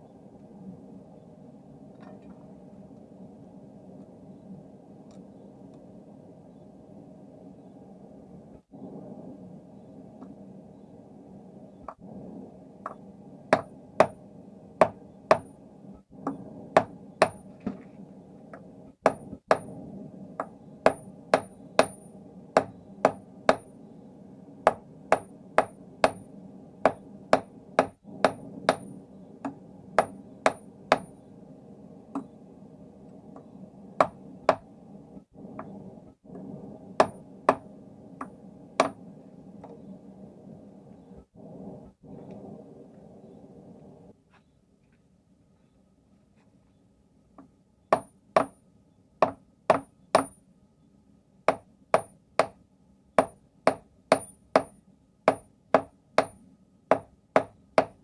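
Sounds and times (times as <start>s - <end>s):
hammer striking steel on anvil: 26.9s - 31.2s, 37.0s - 37.6s, 38.2s - 39.0s.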